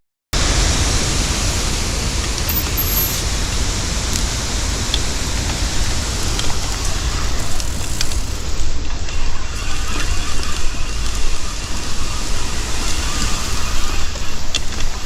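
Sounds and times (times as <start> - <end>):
river rapids rushing: 0.4 - 15.0.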